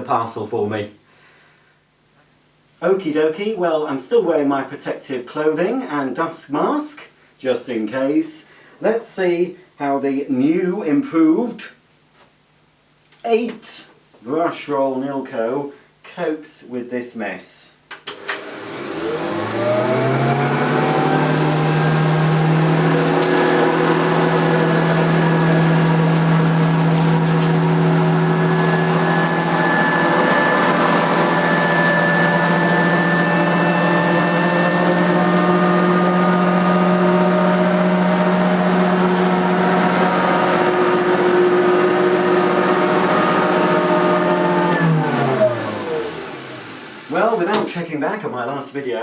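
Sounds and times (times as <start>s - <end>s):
upright vacuum cleaner running: 18.1s - 47.7s.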